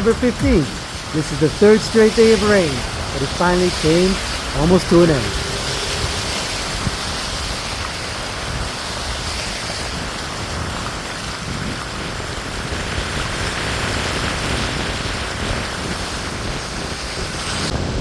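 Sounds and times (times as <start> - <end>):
moving vehicle rushing noise: 2.6 - 8.6.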